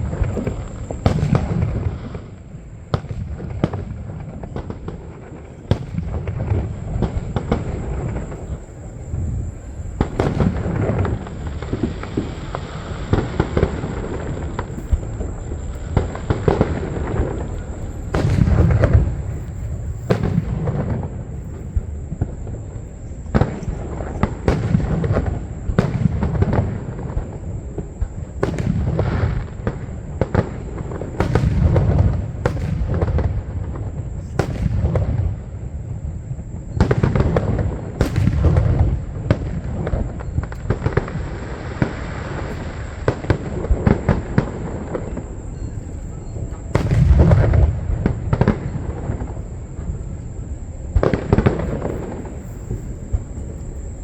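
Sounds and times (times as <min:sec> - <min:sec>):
fireworks booming: 0:00.0 - 0:54.0
fireworks cracks and pops: 0:00.0 - 0:54.0.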